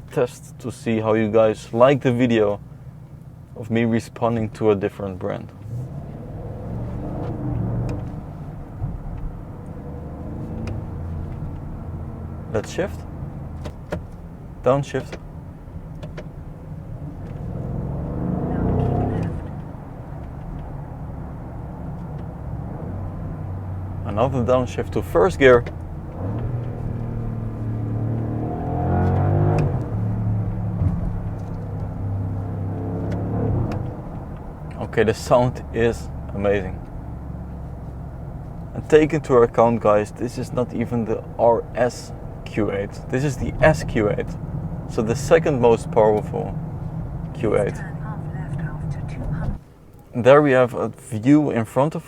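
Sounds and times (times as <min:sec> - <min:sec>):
car engine accelerating: 0:00.0 - 0:52.0
sharp crack at gear change: 0:06.9 - 0:11.8, 0:25.4 - 0:35.6.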